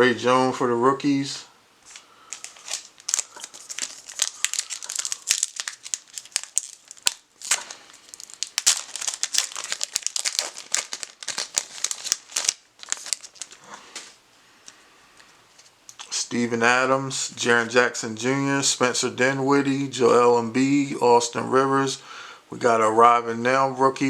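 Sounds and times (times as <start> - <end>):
plastic wrapper crinkling and tearing: 1.8 - 14.2.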